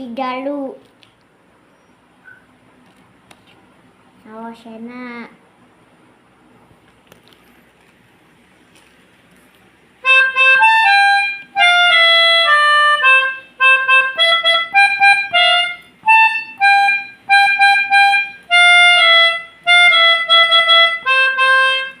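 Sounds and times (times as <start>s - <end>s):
melodica playing a horn tune: 10.0s - 22.0s.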